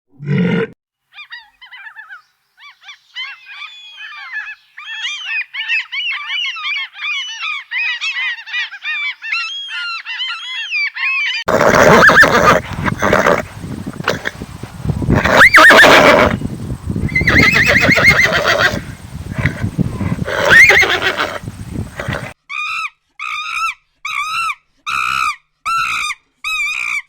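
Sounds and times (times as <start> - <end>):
horse whinny: 0.2 - 0.8, 11.5 - 16.4, 17.1 - 22.4.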